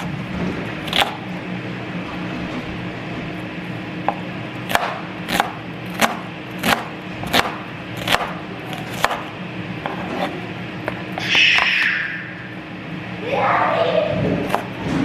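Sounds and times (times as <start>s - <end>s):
knife chopping on cutting board: 4.0s - 11.0s, 14.5s - 14.8s.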